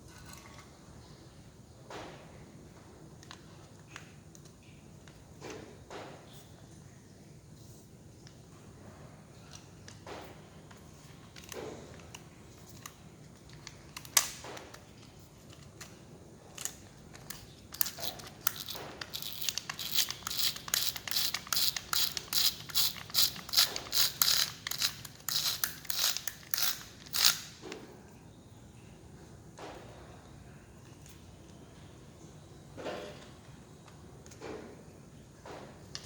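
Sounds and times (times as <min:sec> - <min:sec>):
drill parts clicking and scraping: 0:17.8 - 0:27.5.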